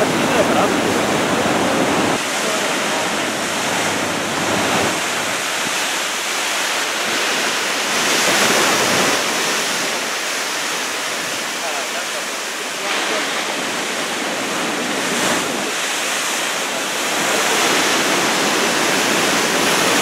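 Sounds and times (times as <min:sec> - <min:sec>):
big waves breaking: 0:00.0 - 0:20.0.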